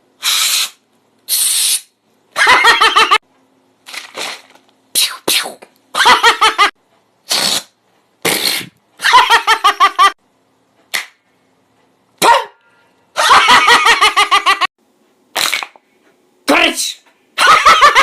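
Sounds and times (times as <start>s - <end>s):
mouth hissing and spitting: 0.2s - 2.0s, 7.2s - 8.8s.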